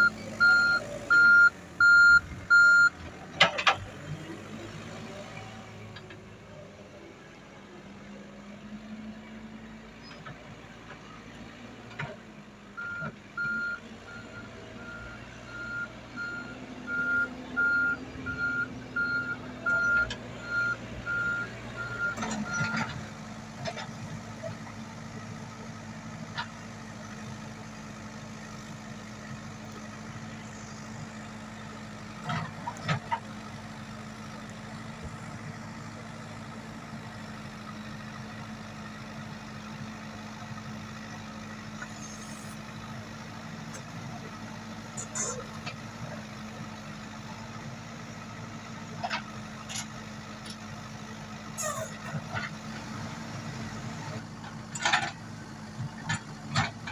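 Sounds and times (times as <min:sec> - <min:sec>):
reversing alarm beeping: 0:00.0 - 0:02.9
diesel engine running: 0:00.0 - 0:56.9.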